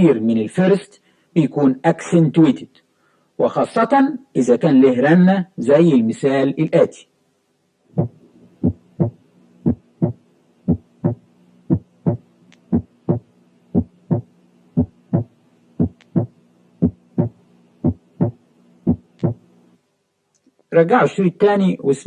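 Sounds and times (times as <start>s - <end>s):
low steady hum: 0.0s - 22.0s
heartbeat through stethoscope: 8.0s - 19.4s.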